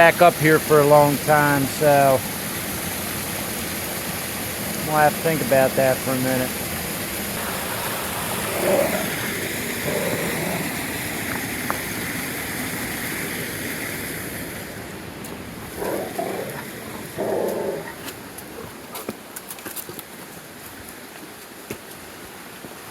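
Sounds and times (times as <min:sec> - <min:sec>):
creek rushing: 0:00.0 - 0:22.9
low whining vocal sounds: 0:07.7 - 0:11.6, 0:15.6 - 0:18.9.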